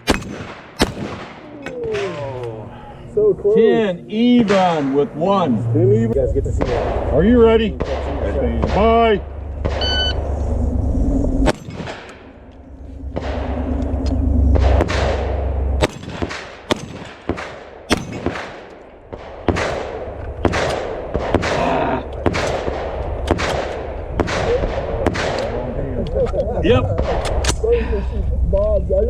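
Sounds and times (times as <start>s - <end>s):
shotgun shots with echo: 0.0s - 2.4s, 4.4s - 5.2s, 6.6s - 9.9s, 11.4s - 12.3s, 13.2s - 13.6s, 14.6s - 25.7s.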